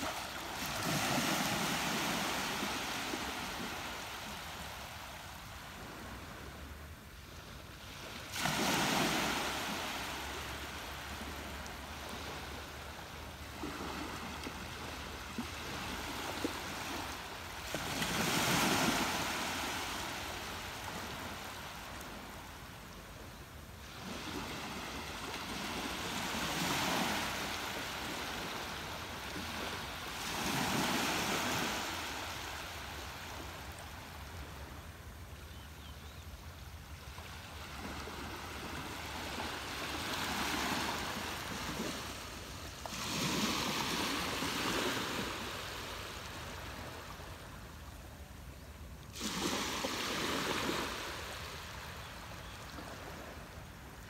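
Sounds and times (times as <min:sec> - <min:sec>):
ocean waves breaking: 0:00.0 - 0:06.8, 0:07.8 - 0:22.4, 0:23.8 - 0:34.3, 0:37.2 - 0:47.3, 0:49.1 - 0:51.9.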